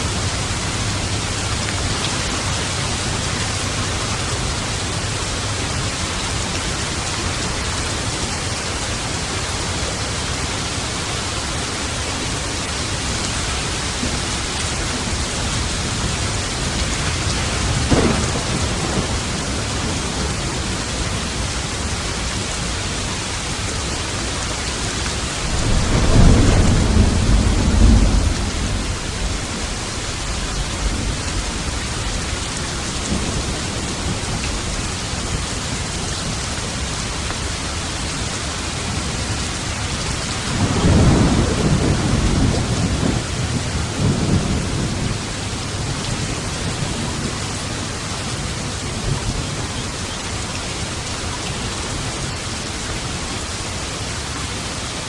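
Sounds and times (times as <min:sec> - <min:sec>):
rain hissing: 0:00.0 - 0:55.0
thunder rumbling: 0:11.2 - 0:22.8, 0:24.6 - 0:37.2, 0:38.6 - 0:47.7
thunder crack: 0:15.1 - 0:20.8, 0:25.3 - 0:32.4, 0:40.5 - 0:45.2.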